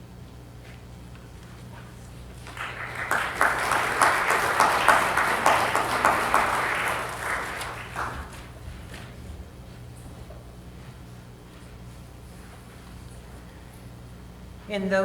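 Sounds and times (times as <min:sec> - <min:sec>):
audience clapping: 0:02.4 - 0:09.1.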